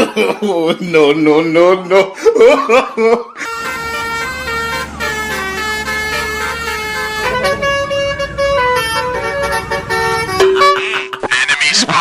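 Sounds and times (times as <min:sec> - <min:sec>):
multi-tone bus horn melody: 0:03.2 - 0:11.2
low steady rumble: 0:03.5 - 0:10.4.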